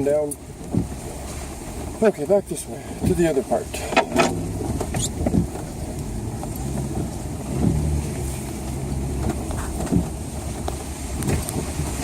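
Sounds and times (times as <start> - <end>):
truck engine running at low speed: 3.8 - 12.0.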